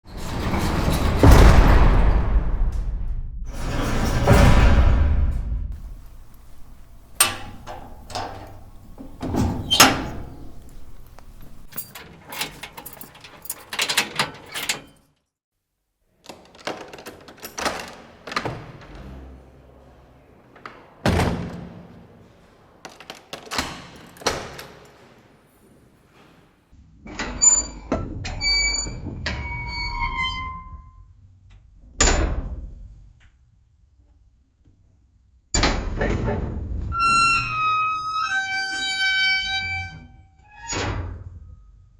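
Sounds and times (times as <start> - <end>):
metal cell doors slamming: 5.7 - 14.9
metallic clinks of lock and keys: 5.8 - 15.0.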